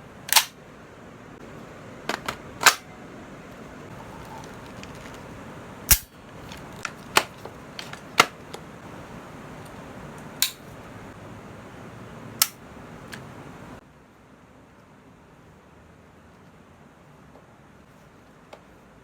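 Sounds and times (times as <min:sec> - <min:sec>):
steady background hiss: 0:00.0 - 0:19.0
airsoft gun clicks: 0:00.3 - 0:00.6.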